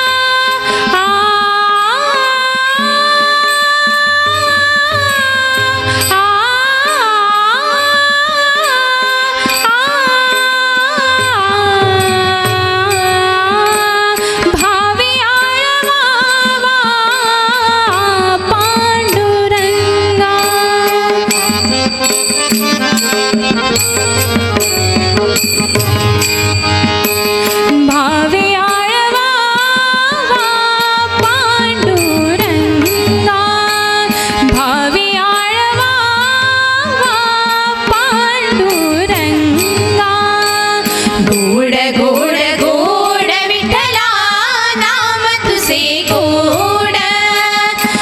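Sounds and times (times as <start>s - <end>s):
hand drum: 0.9s - 48.0s
ornamented melody: 19.0s - 29.2s.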